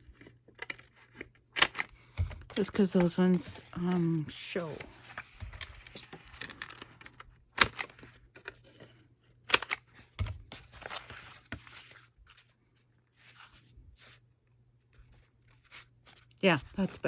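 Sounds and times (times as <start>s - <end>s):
paper rustling: 10.5s - 12.6s.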